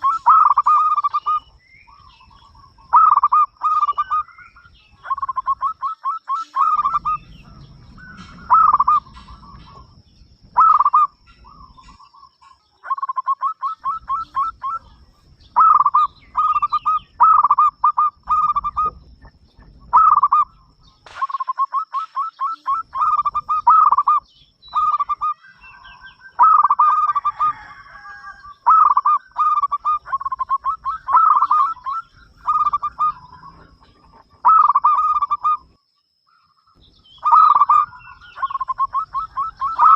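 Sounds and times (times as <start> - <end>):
dove cooing: 0.0 - 35.7, 37.2 - 39.9.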